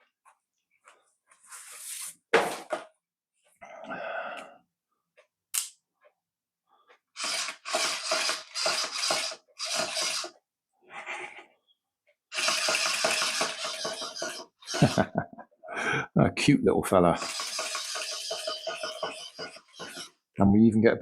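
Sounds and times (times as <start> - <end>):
toy electric motor whirring: 7.2 - 10.4, 12.3 - 15.1, 17.2 - 20.2.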